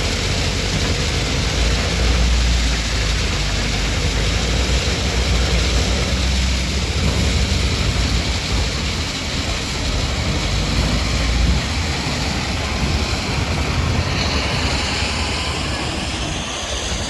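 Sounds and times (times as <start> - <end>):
heavy machinery rumble: 0.0 - 17.0.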